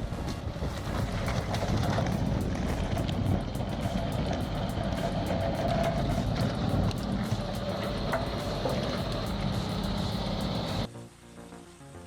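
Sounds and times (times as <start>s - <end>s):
heavy engine running: 0.0s - 10.9s
sharp clicks and rattles: 0.8s - 10.9s.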